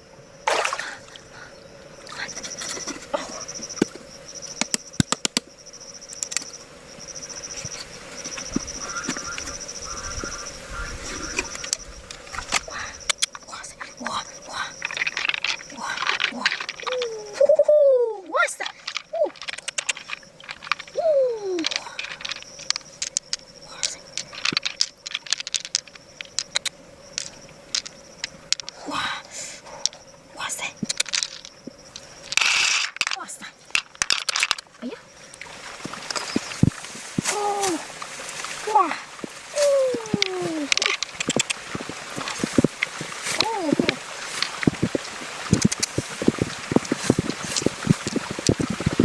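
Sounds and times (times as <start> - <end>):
faint steady hum: 0.0 - 49.0
insect chirping trills: 0.0 - 49.0
small hard objects clicking: 11.4 - 17.4, 18.5 - 28.8, 30.6 - 34.7, 39.2 - 49.0.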